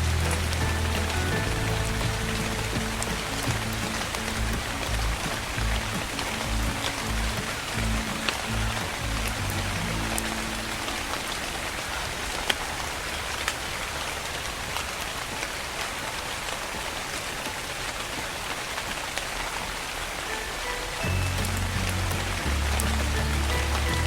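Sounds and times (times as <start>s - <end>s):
soft low music notes: 0.0s - 11.9s, 20.3s - 24.0s
rain pattering: 0.0s - 24.0s.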